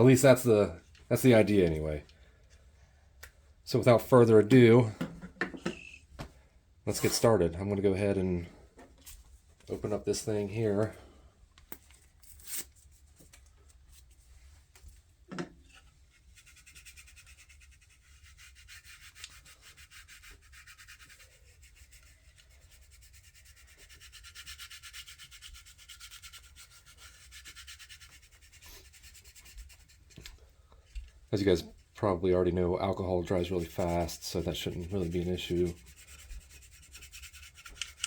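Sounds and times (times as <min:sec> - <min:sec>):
wipe rubbing on plastic: 0:15.8 - 0:30.3, 0:32.9 - 0:38.0.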